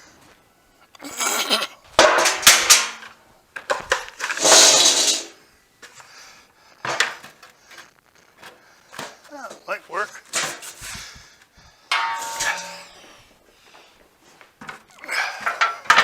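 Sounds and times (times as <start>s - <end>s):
scraping: 2.0s - 6.0s, 11.9s - 13.2s
metal knocks and clatters: 11.9s - 13.0s.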